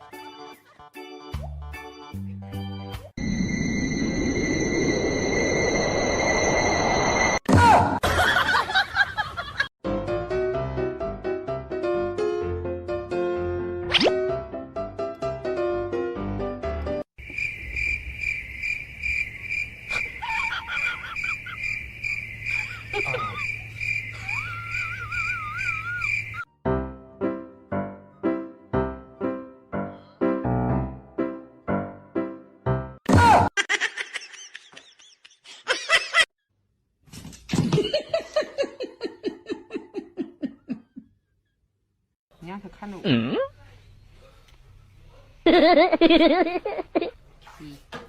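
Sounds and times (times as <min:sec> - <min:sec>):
cricket chirping: 0:03.2 - 0:07.4, 0:17.2 - 0:26.5
piano music: 0:09.8 - 0:17.0, 0:26.5 - 0:33.0
person laughing: 0:19.9 - 0:21.6, 0:22.5 - 0:23.6, 0:24.2 - 0:26.2, 0:33.6 - 0:36.3, 0:37.7 - 0:41.1, 0:45.5 - 0:47.2
wavering whistle-like calls: 0:24.1 - 0:26.4.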